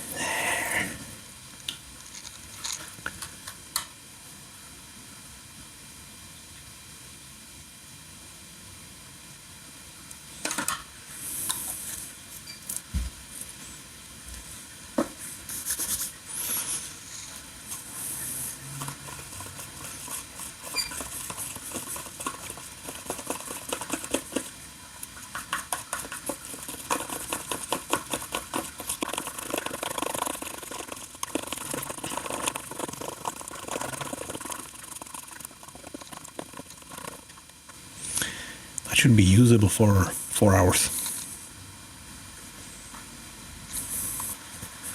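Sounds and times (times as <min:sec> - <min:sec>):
adhesive stirred in container: 0:15.6 - 0:37.5.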